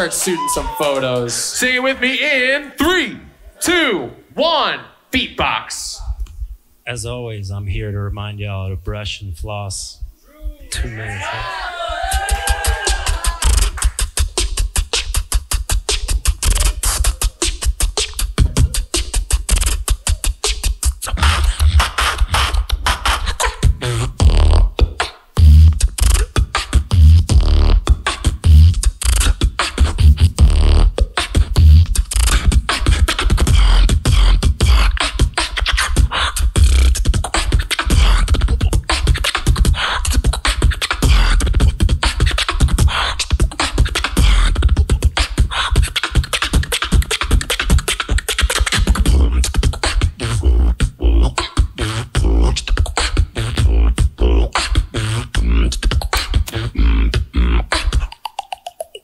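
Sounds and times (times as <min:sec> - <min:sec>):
beatboxing: 0:09.4 - 0:59.0
tonal vocal sounds: 0:33.4 - 0:59.0.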